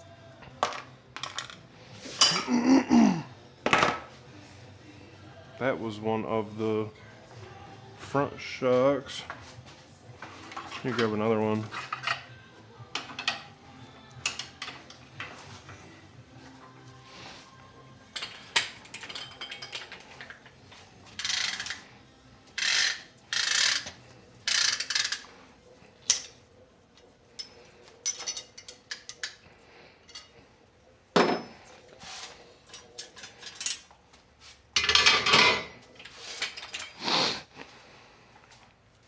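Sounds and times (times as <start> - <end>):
metallic clicking and scraping: 21.2 - 21.9, 22.6 - 25.3.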